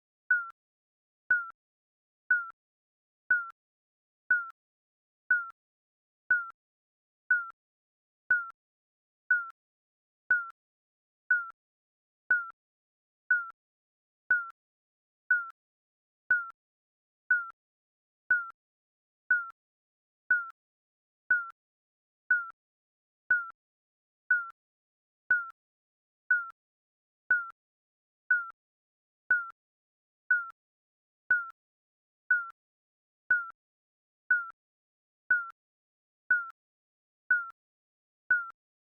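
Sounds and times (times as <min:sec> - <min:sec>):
timer beeps: 0:00.3 - 0:00.6, 0:01.3 - 0:01.6, 0:02.3 - 0:02.6, 0:03.3 - 0:03.6, 0:04.3 - 0:04.6, 0:05.3 - 0:05.6, 0:06.3 - 0:06.6, 0:07.3 - 0:07.6, 0:08.3 - 0:08.6, 0:09.3 - 0:09.6, 0:10.3 - 0:10.6, 0:11.3 - 0:11.6, 0:12.3 - 0:12.6, 0:13.3 - 0:13.6, 0:14.3 - 0:14.6, 0:15.3 - 0:15.6, 0:16.3 - 0:16.6, 0:17.3 - 0:17.6, 0:18.3 - 0:18.6, 0:19.3 - 0:19.6, 0:20.3 - 0:20.6, 0:21.3 - 0:21.6, 0:22.3 - 0:22.6, 0:23.3 - 0:23.6, 0:24.3 - 0:24.6, 0:25.3 - 0:25.6, 0:26.3 - 0:26.6, 0:27.3 - 0:27.6, 0:28.3 - 0:28.6, 0:29.3 - 0:29.6, 0:30.3 - 0:30.6, 0:31.3 - 0:31.6, 0:32.3 - 0:32.6, 0:33.3 - 0:33.6, 0:34.3 - 0:34.6, 0:35.3 - 0:35.6, 0:36.3 - 0:36.6, 0:37.3 - 0:37.6, 0:38.3 - 0:38.6.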